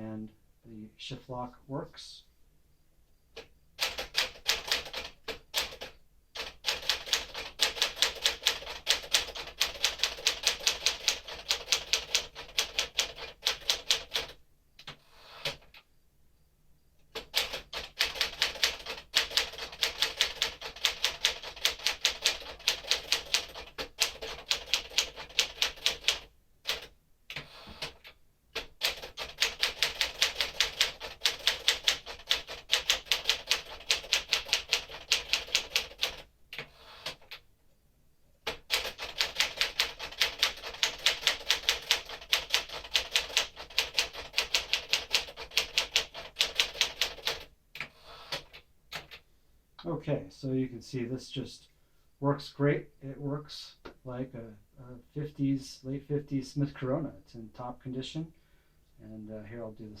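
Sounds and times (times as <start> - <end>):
manual typewriter typing: 3.8 - 15.8, 17.1 - 37.4, 38.4 - 49.2.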